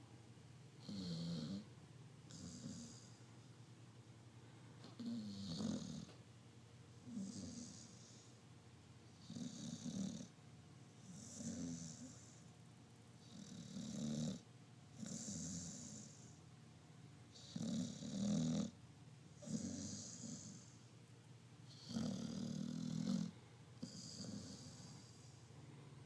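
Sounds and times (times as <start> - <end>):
person snoring: 2.3 - 3.2, 5.0 - 6.1, 19.4 - 20.7, 21.7 - 25.2.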